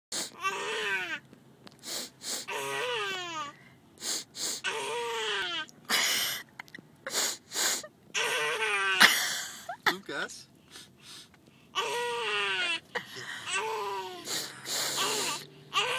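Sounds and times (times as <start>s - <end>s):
person sniffing: 0.1s - 0.4s, 1.8s - 2.5s, 4.0s - 4.6s, 7.1s - 7.9s, 14.2s - 15.4s.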